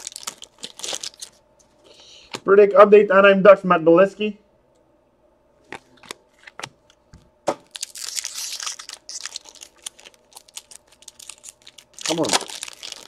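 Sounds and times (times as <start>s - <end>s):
foil wrapper tearing and rustling: 0.0s - 1.4s, 7.6s - 13.0s.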